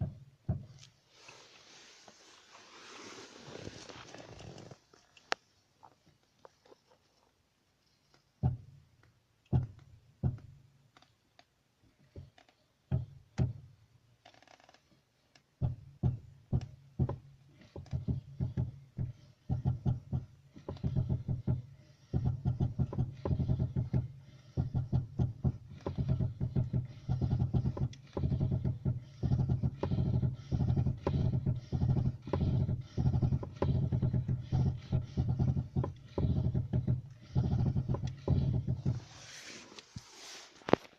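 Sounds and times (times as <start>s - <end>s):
steering rack knocking: 15.6s - 39.3s
steady low hum: 15.6s - 39.9s.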